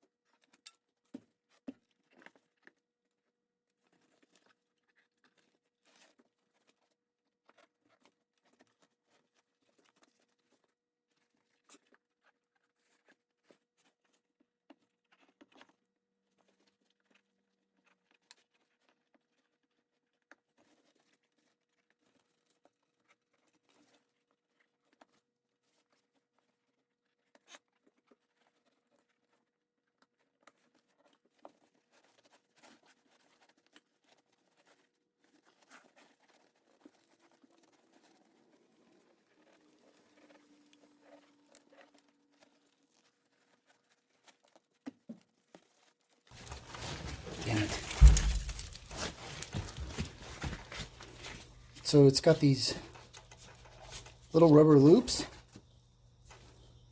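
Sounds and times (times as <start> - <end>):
hands clicking and rustling: 43.8 - 56.8.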